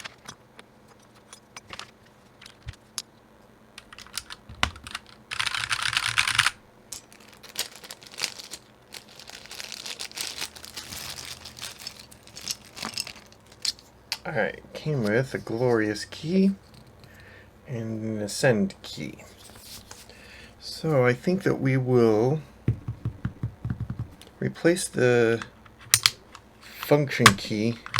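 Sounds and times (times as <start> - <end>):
mechanical keyboard typing: 3.8 - 6.6.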